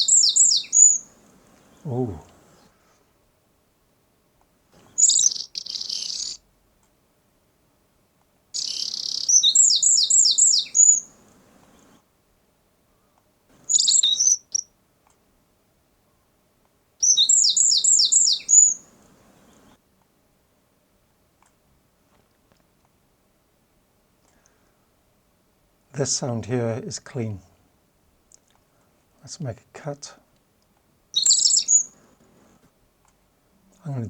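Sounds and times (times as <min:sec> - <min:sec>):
songbird singing: 0:00.0 - 0:02.8, 0:04.8 - 0:06.5, 0:08.6 - 0:12.0, 0:12.8 - 0:14.8, 0:17.0 - 0:19.8, 0:31.0 - 0:32.5, 0:33.5 - 0:34.0.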